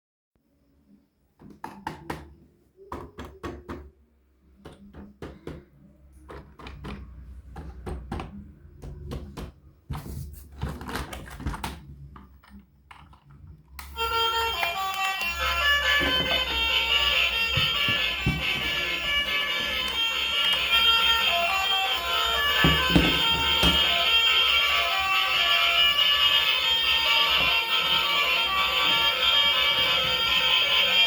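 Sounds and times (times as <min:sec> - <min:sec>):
hard objects clicking and knocking: 0:04.6 - 0:09.6, 0:17.5 - 0:20.8, 0:22.6 - 0:24.0
music: 0:13.8 - 0:31.0.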